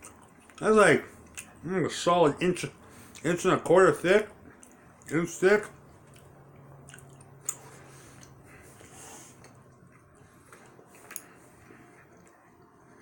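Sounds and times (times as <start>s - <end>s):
chewing gummy candy: 0.0s - 1.7s, 4.4s - 13.0s.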